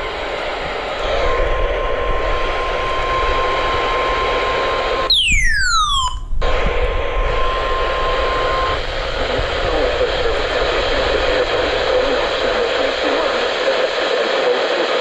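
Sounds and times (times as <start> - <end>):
falling electronic sweep: 5.1 - 6.4
steady alarm tone: 5.1 - 6.4
radio reception hiss: 6.4 - 15.0.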